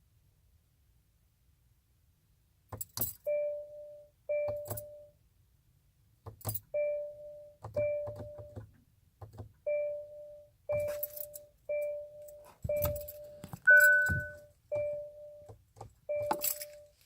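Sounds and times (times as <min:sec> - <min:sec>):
car keys jangling: 0:02.7 - 0:03.4, 0:10.7 - 0:15.0, 0:15.8 - 0:17.0
car warning chime: 0:03.2 - 0:05.2, 0:06.6 - 0:08.6, 0:09.7 - 0:17.0.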